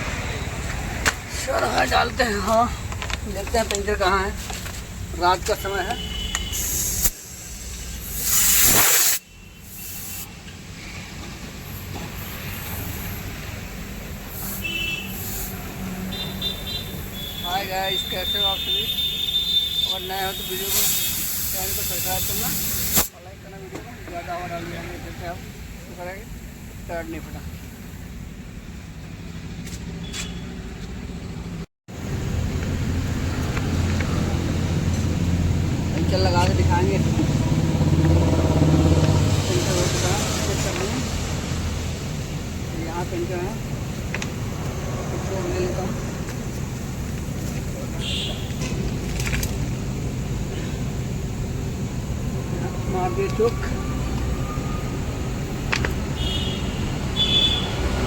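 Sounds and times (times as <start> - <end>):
compressed air hissing: 4.4 - 23.2, 38.6 - 58.0.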